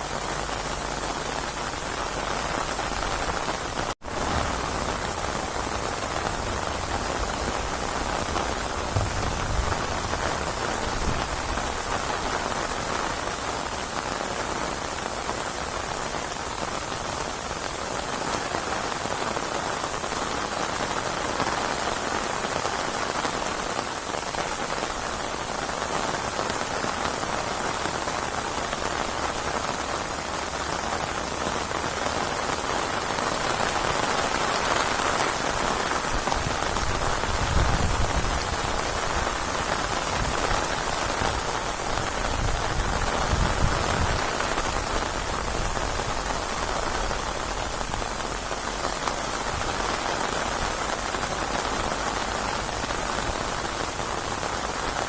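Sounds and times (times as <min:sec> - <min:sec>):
heavy rain: 0:00.0 - 0:55.0.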